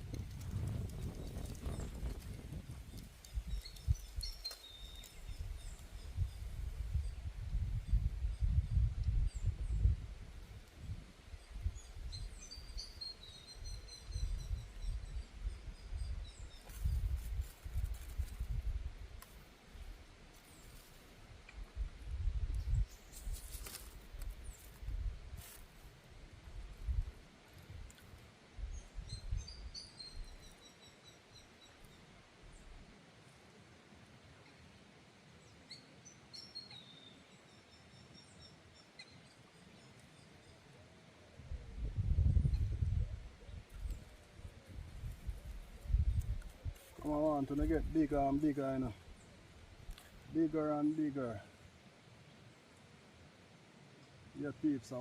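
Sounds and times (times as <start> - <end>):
small bird chirping: 0.5 - 9.9, 10.8 - 18.6, 28.6 - 32.1, 35.7 - 40.6.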